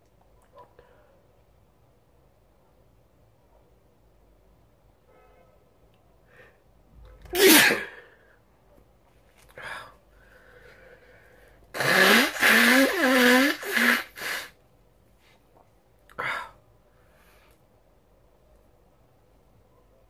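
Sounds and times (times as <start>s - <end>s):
person sneezing loudly: 7.3s - 8.2s, 11.7s - 14.6s
short sharp breath: 16.9s - 17.6s.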